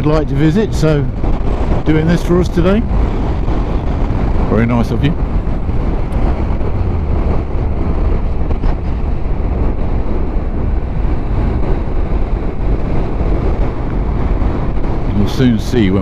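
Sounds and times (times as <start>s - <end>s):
wind rushing over microphone: 0.0s - 16.0s
motorcycle engine: 1.1s - 15.4s.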